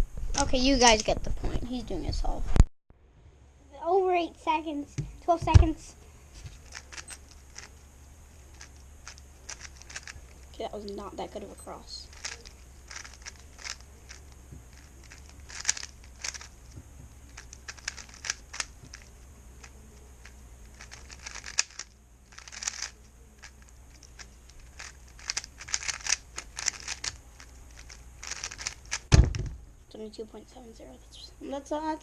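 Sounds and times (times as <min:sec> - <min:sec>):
steady low hum: 0:00.0 - 0:32.0
puzzle cube plastic layers clicking: 0:06.6 - 0:07.7, 0:08.5 - 0:10.3, 0:12.1 - 0:29.1.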